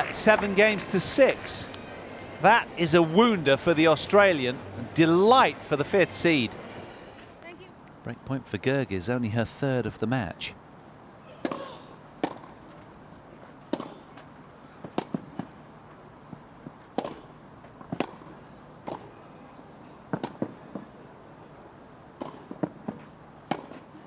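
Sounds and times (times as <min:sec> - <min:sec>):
tennis racquets hitting ball: 0:00.0 - 0:06.6, 0:11.4 - 0:12.6, 0:13.6 - 0:15.6, 0:16.3 - 0:19.2, 0:20.1 - 0:20.9, 0:22.1 - 0:24.0.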